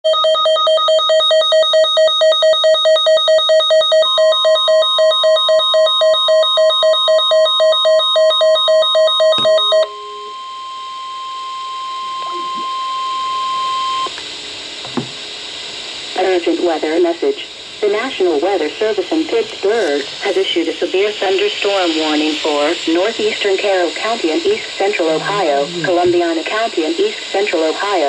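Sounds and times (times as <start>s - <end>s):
electronic alarm beeping rapidly: 0.1s - 10.0s
steady warning alarm tone: 0.1s - 14.2s, 18.0s - 28.0s
hiss: 17.3s - 25.0s.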